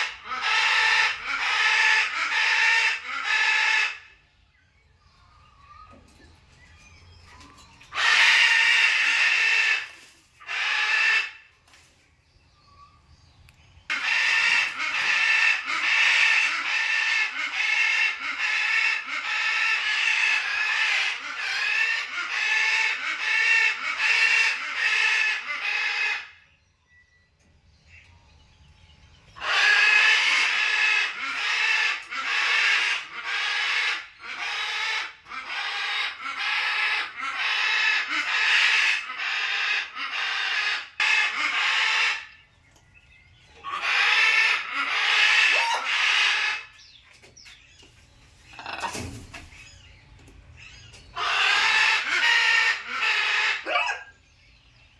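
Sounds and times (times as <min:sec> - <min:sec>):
parrots squawking harshly: 0:00.0 - 0:04.0, 0:07.9 - 0:11.4, 0:13.9 - 0:26.3, 0:29.4 - 0:42.4, 0:43.6 - 0:46.7, 0:48.5 - 0:49.1, 0:51.2 - 0:54.2.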